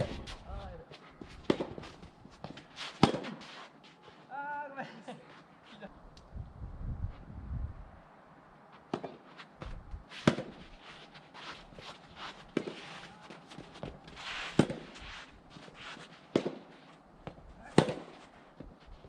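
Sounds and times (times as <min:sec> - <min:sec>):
rackets striking tennis ball: 0:00.0 - 0:00.5, 0:01.2 - 0:03.7, 0:08.9 - 0:18.8.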